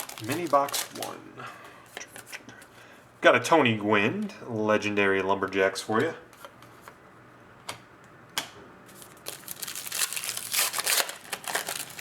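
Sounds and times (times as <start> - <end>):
wrapper crinkling and tearing: 0.0 - 1.1, 8.9 - 12.0.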